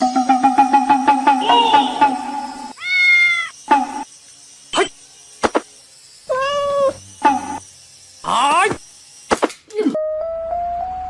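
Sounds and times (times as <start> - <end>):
rhythmic music: 0.0 - 2.7
cat meowing: 2.8 - 3.5, 6.3 - 7.0.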